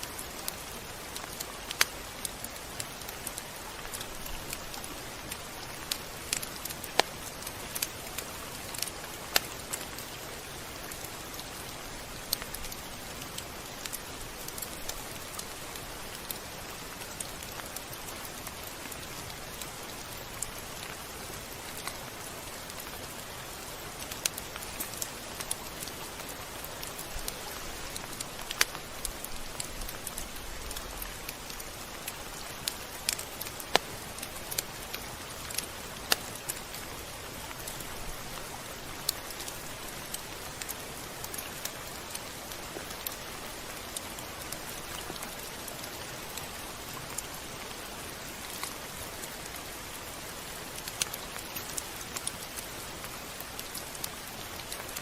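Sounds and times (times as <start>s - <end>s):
rain drop ticks: 0.0s - 55.0s
steady rain hiss: 0.0s - 55.0s.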